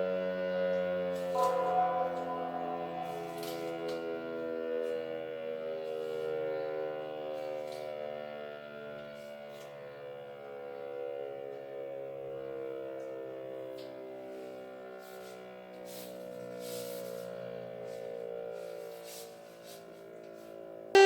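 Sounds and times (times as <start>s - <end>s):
civil defense siren steady tone: 1.4s - 14.4s.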